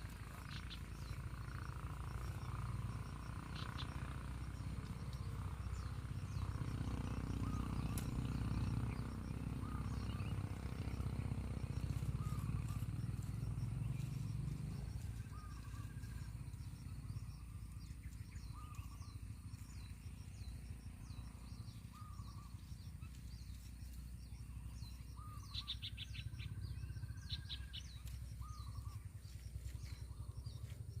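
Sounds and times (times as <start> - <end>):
short bird calls: 7.2 - 14.3, 21.3 - 23.7, 24.6 - 30.7.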